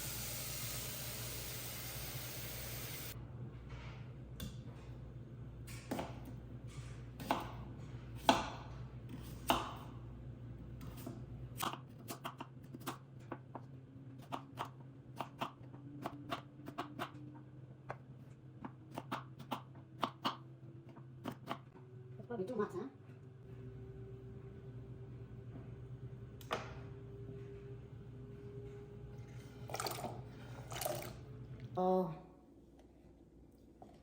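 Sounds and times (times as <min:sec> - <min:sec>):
knife chopping on cutting board: 0:07.2 - 0:09.9.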